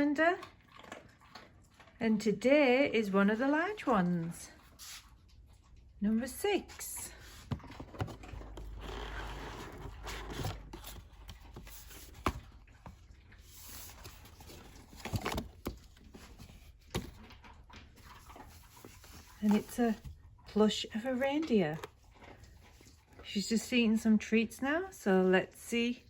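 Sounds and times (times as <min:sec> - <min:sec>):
cardboard rustling and scraping: 0:07.2 - 0:17.3, 0:18.0 - 0:20.2.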